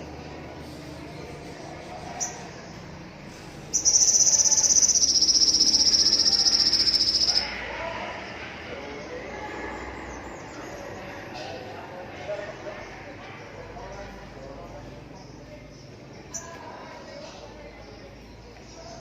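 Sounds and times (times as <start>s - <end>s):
bird trilling: 3.4s - 7.6s
short high bird chirp: 3.7s - 7.5s.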